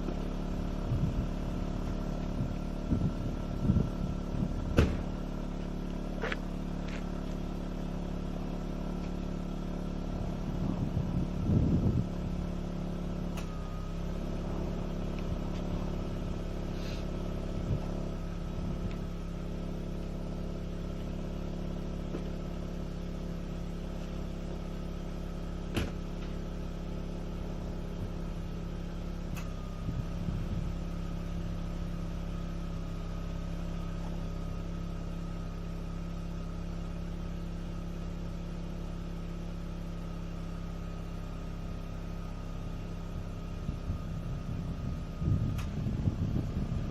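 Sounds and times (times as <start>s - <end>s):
rotary engine idling: 0.0s - 46.9s.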